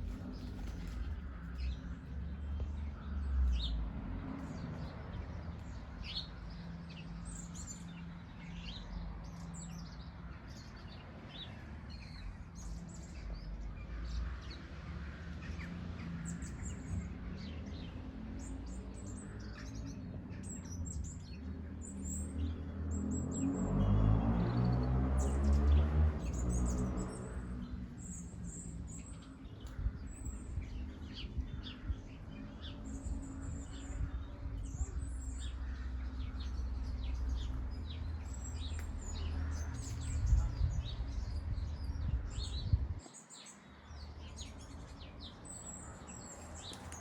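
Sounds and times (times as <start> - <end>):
small birds chirping: 0.0 - 47.0
steady low rumble: 27.4 - 43.0.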